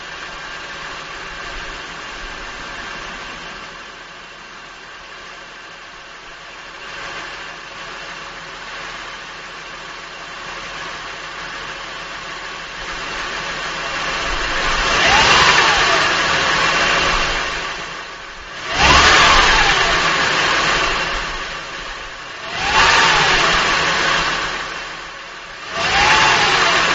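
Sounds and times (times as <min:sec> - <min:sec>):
engine knock: 0:06.6 - 0:26.9
car engine revving: 0:12.3 - 0:26.9.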